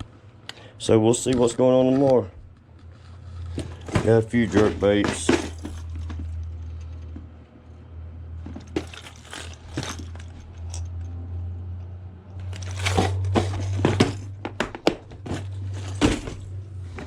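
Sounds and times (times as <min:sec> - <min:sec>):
steady low hum: 0:00.0 - 0:17.0
packaging rustling: 0:01.9 - 0:07.0, 0:08.5 - 0:10.6, 0:12.4 - 0:17.0.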